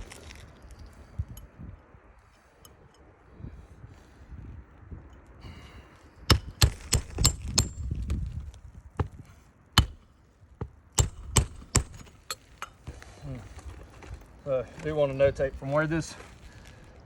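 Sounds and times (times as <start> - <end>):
hammer striking metal tool: 6.3 - 7.8, 9.8 - 10.0, 11.0 - 12.8.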